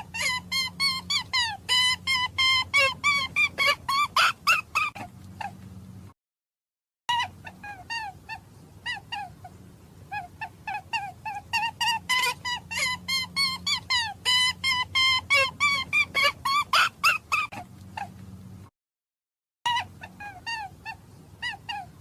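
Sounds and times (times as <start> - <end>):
short pitched animal calls: 0.0 - 5.6, 7.1 - 18.2.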